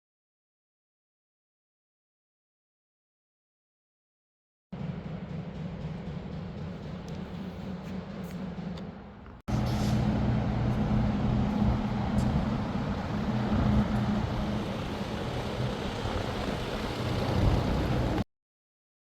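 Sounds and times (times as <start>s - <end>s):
tractor engine running: 9.5s - 18.2s.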